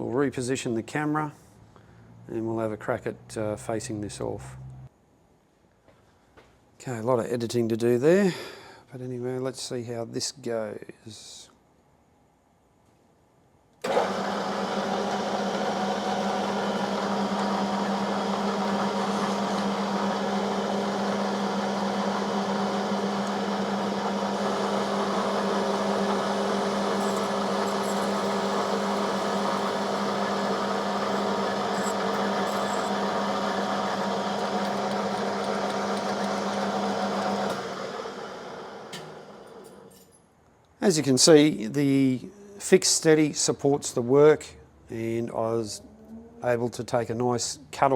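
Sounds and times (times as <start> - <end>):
metal lathe motor hum: 13.9 - 39.9
hiss of lathe cutting steel: 23.8 - 33.1.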